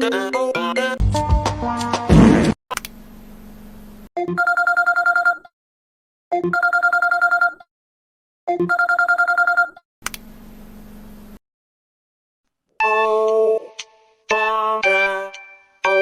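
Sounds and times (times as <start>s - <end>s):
telephone ringing: 4.2s - 5.5s, 6.4s - 7.6s, 8.6s - 9.8s.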